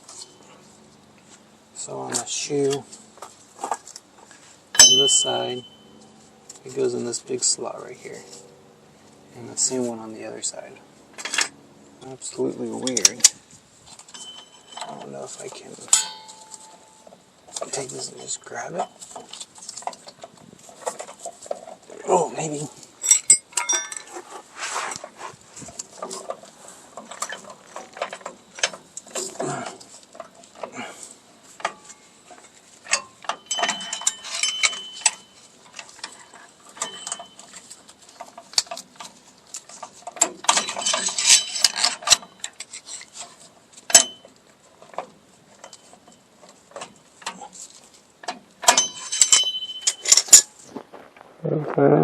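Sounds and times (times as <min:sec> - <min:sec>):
metal tool clinking and scraping: 0:00.0 - 0:00.6, 0:04.7 - 0:06.8, 0:13.9 - 0:50.7.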